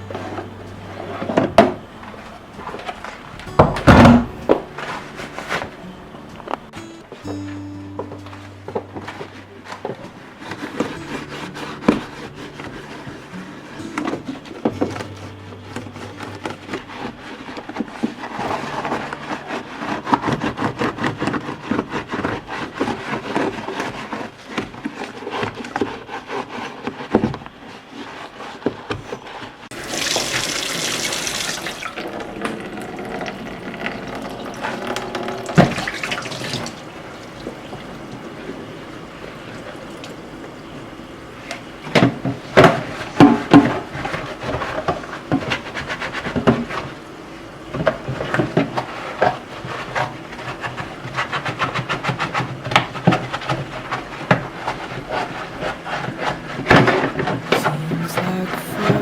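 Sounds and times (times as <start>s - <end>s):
water running and splashing: 29.7s - 38.6s.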